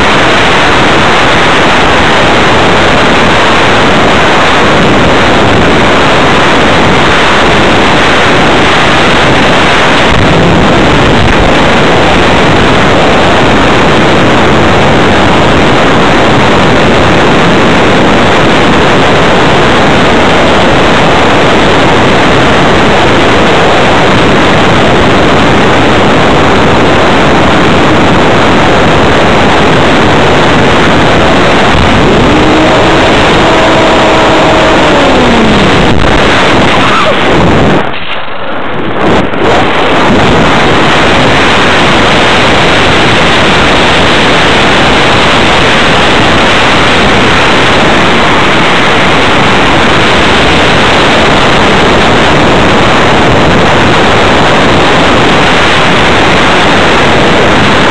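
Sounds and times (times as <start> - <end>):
electric motor whine: 0.0 - 37.9
wind rushing over camera: 0.0 - 57.9.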